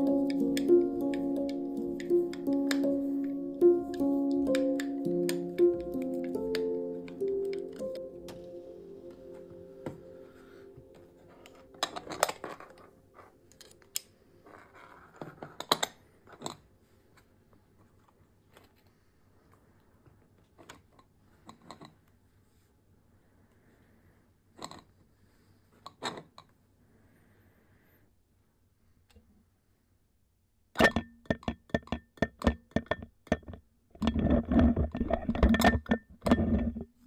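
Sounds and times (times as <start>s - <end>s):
isolated knocks: 30.8s - 36.9s.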